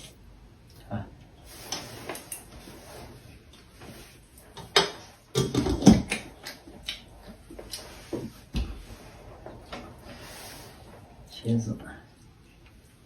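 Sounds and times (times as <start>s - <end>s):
tableware clicking and knocking: 4.6s - 6.3s.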